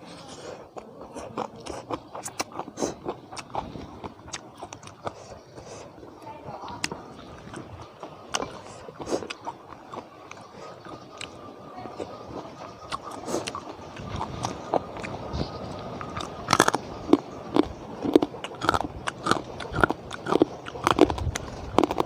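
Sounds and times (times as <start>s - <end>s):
person chewing crunchy food: 0.0s - 22.0s.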